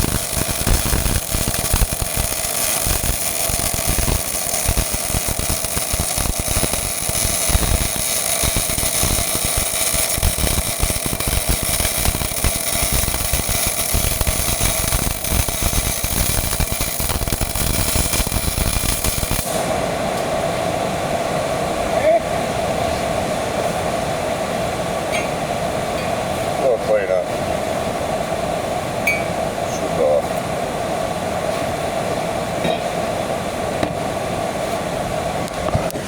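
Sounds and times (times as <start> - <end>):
welding arc crackling: 0.0 - 19.7
machine hum: 0.0 - 25.0.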